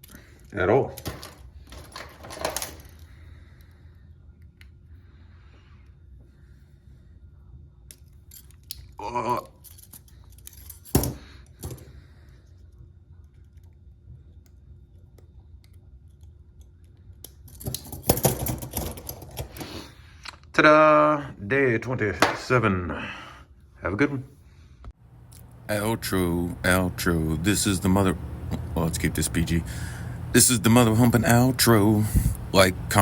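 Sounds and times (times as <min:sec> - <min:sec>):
handcuffs clicking and rattling: 0:00.0 - 0:03.2, 0:07.9 - 0:11.9, 0:16.0 - 0:19.6
handcuffs clicking: 0:07.9 - 0:11.7.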